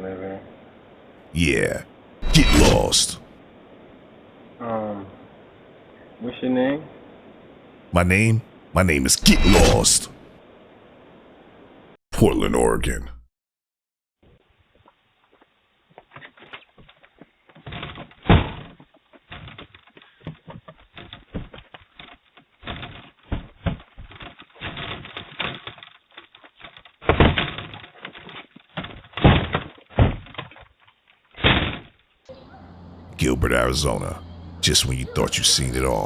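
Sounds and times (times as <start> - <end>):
knocks thuds and rattles: 27.0 - 30.8.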